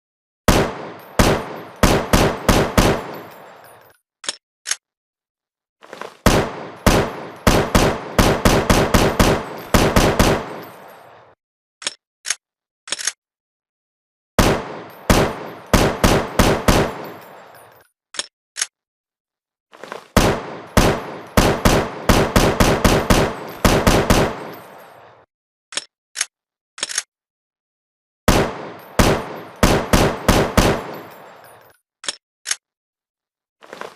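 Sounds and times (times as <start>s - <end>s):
rifle firing bursts: 0.5s - 3.3s, 6.2s - 10.8s, 14.4s - 17.2s, 20.2s - 24.6s, 28.3s - 31.1s.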